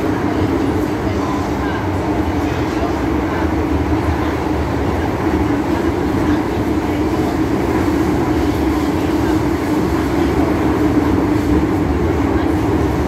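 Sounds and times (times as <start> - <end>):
metro train rumbling: 0.0 - 13.0.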